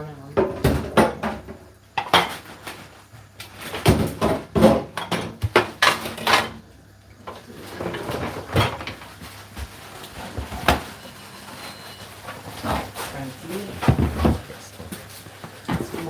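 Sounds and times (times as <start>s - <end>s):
dishes and pans rattling: 3.8s - 6.6s, 7.3s - 9.1s, 11.6s - 14.6s.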